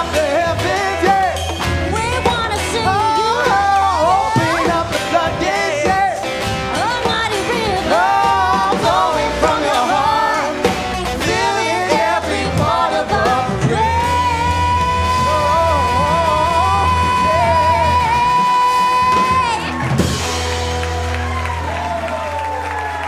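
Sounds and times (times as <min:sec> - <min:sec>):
live band music: 0:00.0 - 0:23.0.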